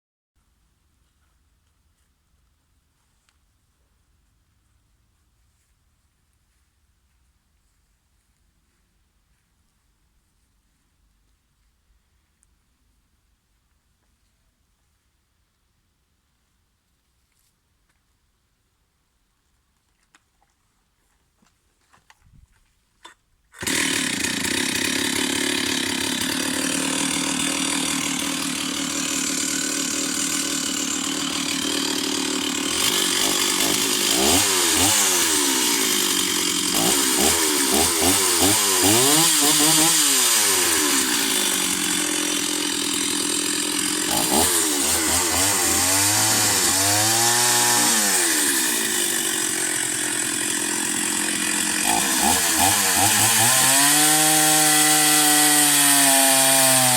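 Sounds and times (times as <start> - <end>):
chainsaw revving: 23.6 - 56.9.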